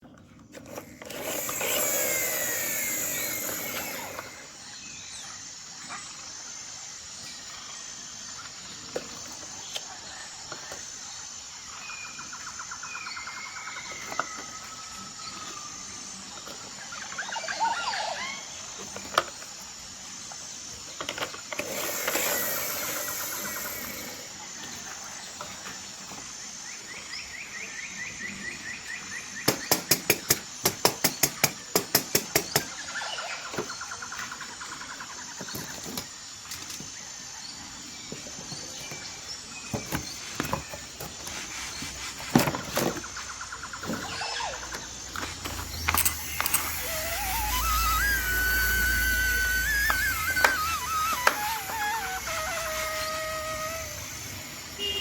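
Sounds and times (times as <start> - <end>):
birds chirping and trilling: 0.0 - 55.0
loud hiss: 1.0 - 4.6, 21.6 - 24.4, 45.2 - 55.0
sharp clicks: 44.7 - 52.6.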